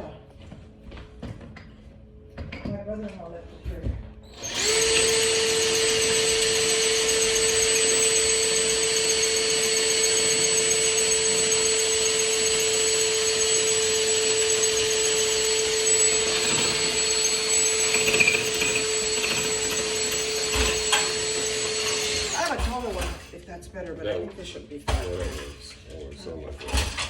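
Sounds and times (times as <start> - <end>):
electric drill boring into brick: 4.3 - 23.2.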